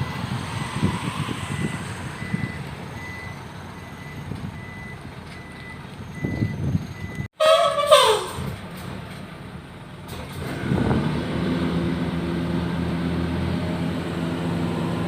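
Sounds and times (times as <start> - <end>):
diesel truck engine running: 0.0 - 15.0
faint reversing beeps: 1.6 - 7.3
loud horn-like blast: 7.4 - 8.6.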